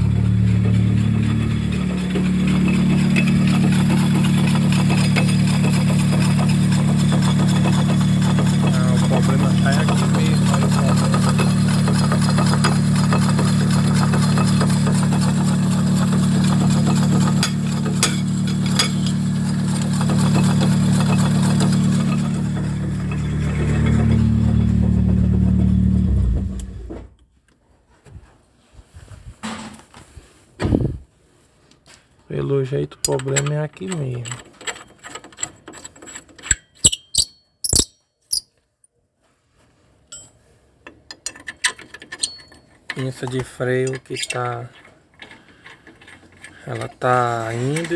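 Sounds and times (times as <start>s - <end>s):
fast fine ticking: 0.0s - 25.4s
car engine running: 0.0s - 27.1s
hand tools clinking on metal: 1.3s - 24.1s, 33.0s - 38.5s, 40.1s - 47.9s.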